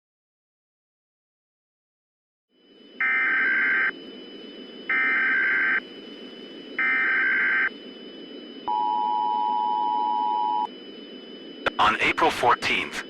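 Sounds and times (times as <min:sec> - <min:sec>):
buzzing data tones: 0:02.7 - 0:13.0.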